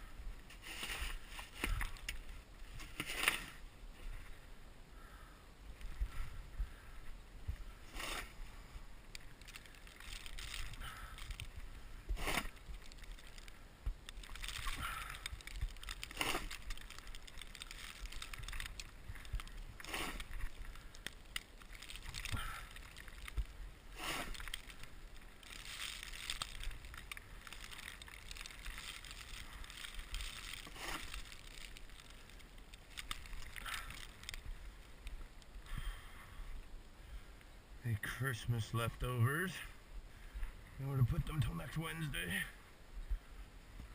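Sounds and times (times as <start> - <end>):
snow shovel scraping snow: 7.9 - 8.4, 12.2 - 12.6, 19.9 - 20.3, 23.9 - 24.4, 30.6 - 31.2.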